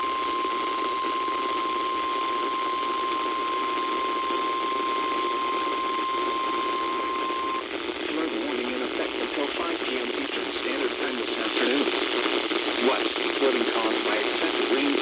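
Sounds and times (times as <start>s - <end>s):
steady alarm tone: 0.0s - 7.7s
radio static: 0.0s - 15.0s.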